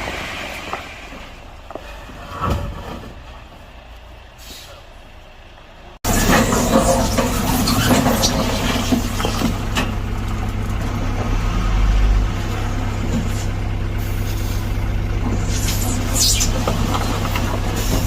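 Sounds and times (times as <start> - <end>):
excavator diesel engine running: 0.0 - 18.0
knocks and scrapes: 0.6 - 3.8, 6.0 - 11.5, 15.2 - 18.0.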